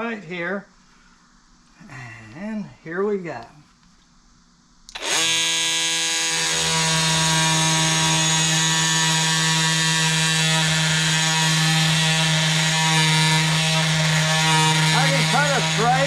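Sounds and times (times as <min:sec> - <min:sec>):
multi-tool buzzing cutting wood: 0:04.9 - 0:16.0.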